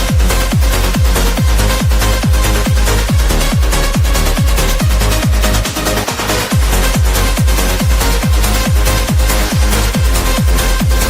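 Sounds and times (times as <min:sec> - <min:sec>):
electronic dance music: 0:00.0 - 0:11.0
kick drum beat: 0:00.0 - 0:11.0.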